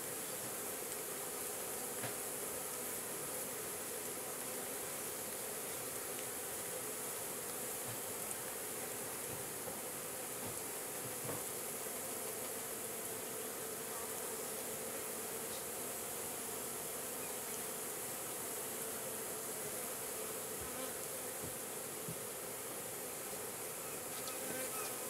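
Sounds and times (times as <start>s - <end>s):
honey bees buzzing: 0.0s - 25.0s.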